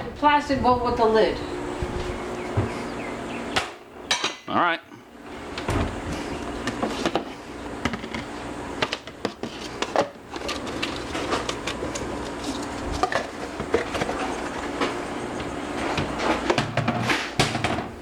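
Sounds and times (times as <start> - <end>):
microwave oven humming: 0.0 - 18.0
dishes clinking and knocking: 4.1 - 4.5.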